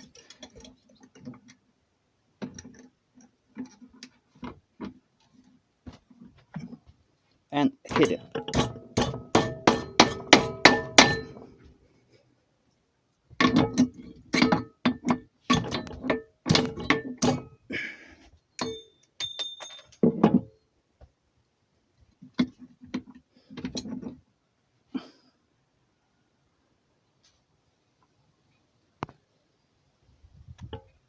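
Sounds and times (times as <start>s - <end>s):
hammer striking metal blade: 7.9s - 11.4s
light high metal clinks: 18.6s - 20.1s.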